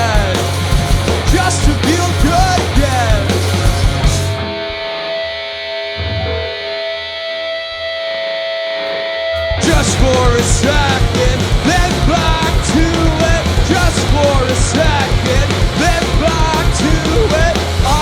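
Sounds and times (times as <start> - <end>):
punk rock band playing: 0.0 - 18.0
electric guitar chord ringing: 4.3 - 9.8.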